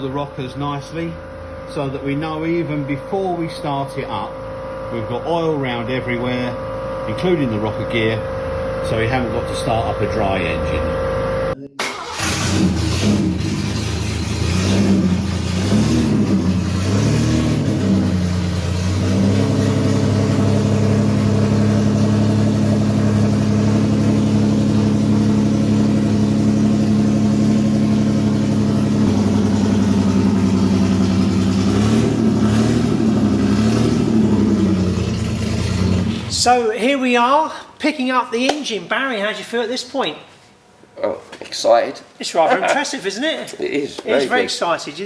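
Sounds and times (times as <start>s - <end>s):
car engine revving and idling: 10.7s - 36.6s.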